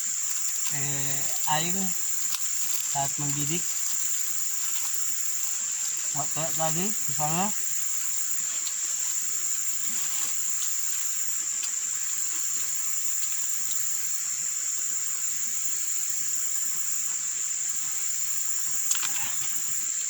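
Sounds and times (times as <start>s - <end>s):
high-pitched insect chorus: 0.0s - 20.0s
faint clicks: 18.7s - 19.8s.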